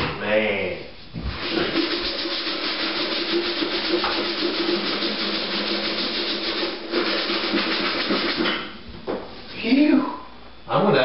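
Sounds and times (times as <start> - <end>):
hard scrubbing inside refrigerator: 1.3 - 8.5.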